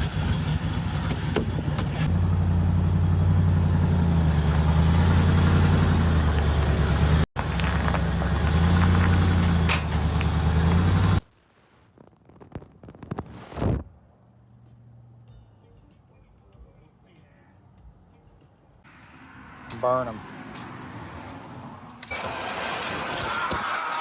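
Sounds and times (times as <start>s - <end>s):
truck engine running: 0.0s - 11.2s.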